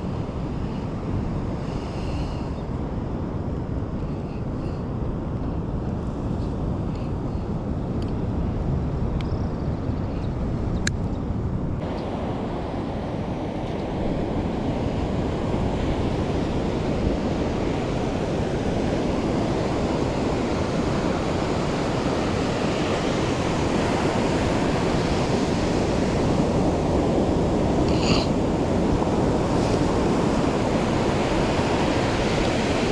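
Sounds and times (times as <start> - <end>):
wind on microphone: 0.0 - 32.9
ocean surf washing onto beach: 11.8 - 32.9.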